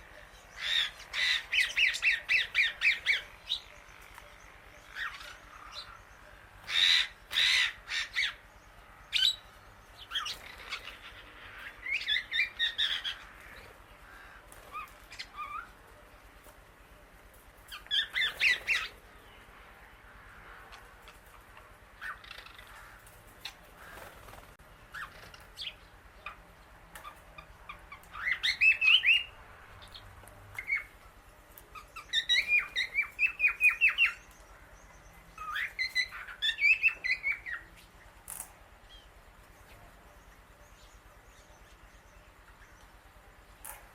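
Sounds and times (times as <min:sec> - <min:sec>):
parakeet calling: 0:00.0 - 0:15.8, 0:17.7 - 0:19.0, 0:20.7 - 0:31.0, 0:31.7 - 0:37.9
other birds calling: 0:00.0 - 0:43.9.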